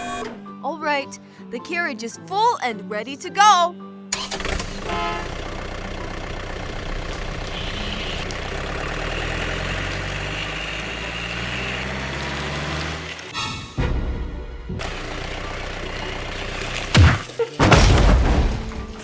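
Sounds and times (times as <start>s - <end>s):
truck engine running: 4.2s - 19.0s.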